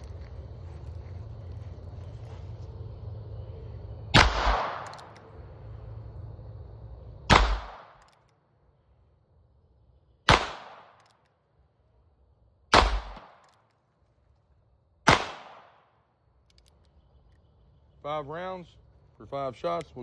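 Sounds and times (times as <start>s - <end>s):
gunshots with echo: 4.2s - 5.0s, 7.3s - 8.0s, 10.3s - 11.0s, 12.7s - 13.4s, 15.1s - 15.9s.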